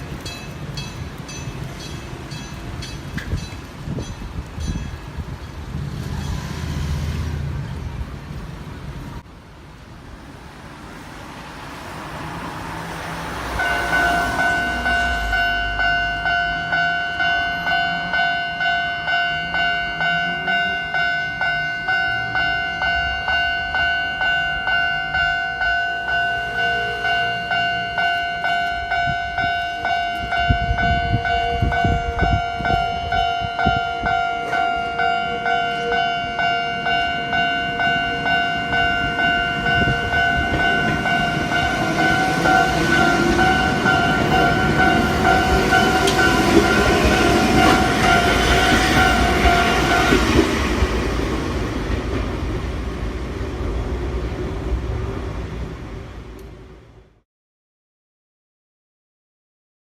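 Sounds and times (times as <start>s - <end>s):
train rumbling past: 0.0s - 57.2s
level crossing warning alarm: 13.5s - 50.7s.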